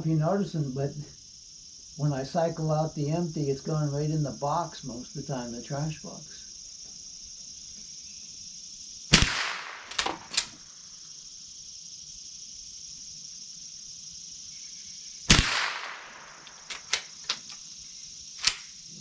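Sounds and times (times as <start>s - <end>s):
crickets chirring: 0.0s - 19.0s
rifle shots: 9.1s - 10.6s, 15.3s - 17.1s
rifle slide clacking: 9.9s - 10.6s, 15.3s - 17.6s, 18.4s - 18.7s.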